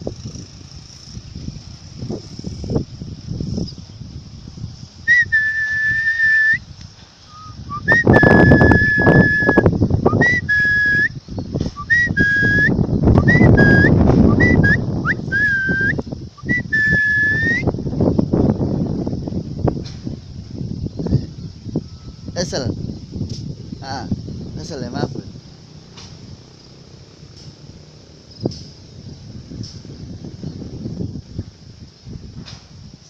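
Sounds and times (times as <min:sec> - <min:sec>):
wind rumbling on microphone: 0:00.0 - 0:33.0
person whistling notes: 0:05.1 - 0:06.7, 0:07.3 - 0:11.2, 0:11.8 - 0:17.7.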